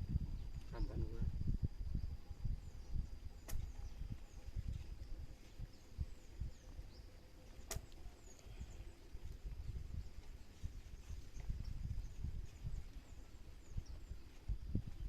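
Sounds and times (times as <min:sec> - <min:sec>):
faint bird chirps: 0:00.3 - 0:15.0
sharp clicks: 0:03.4 - 0:03.7, 0:07.6 - 0:08.0.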